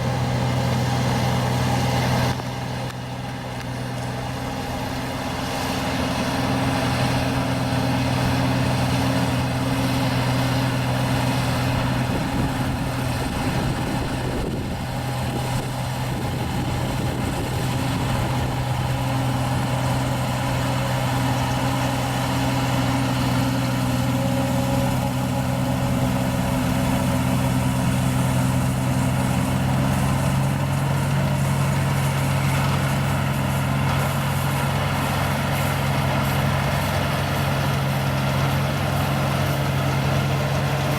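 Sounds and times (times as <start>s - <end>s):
harvester engine drone: 0.0s - 40.9s.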